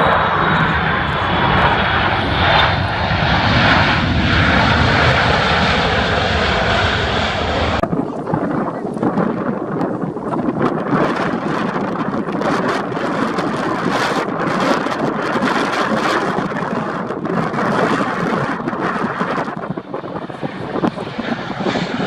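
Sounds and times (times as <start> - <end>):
storm wind buffeting microphone: 0.0 - 22.0.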